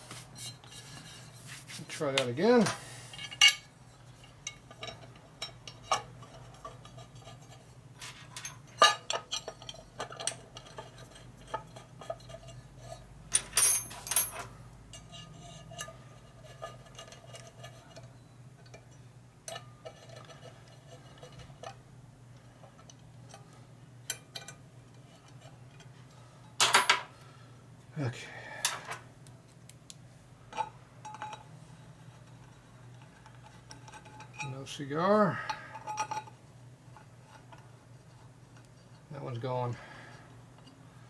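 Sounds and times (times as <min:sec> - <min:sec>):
small metal parts clinking: 0:13.3 - 0:14.6.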